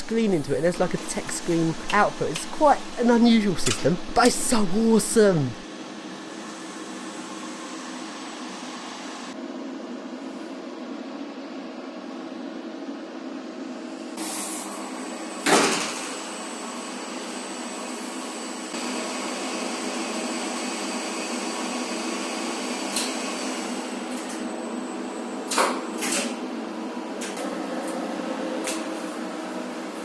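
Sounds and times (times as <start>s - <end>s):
lift machinery humming: 0.0s - 5.7s.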